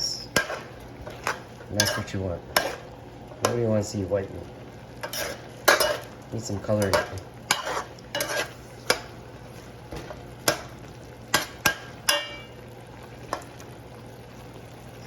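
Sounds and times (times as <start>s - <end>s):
steady sizzle: 0.0s - 15.0s
spoon knocking and scraping pot: 0.3s - 2.8s, 5.0s - 6.1s, 6.8s - 9.1s, 11.3s - 12.5s.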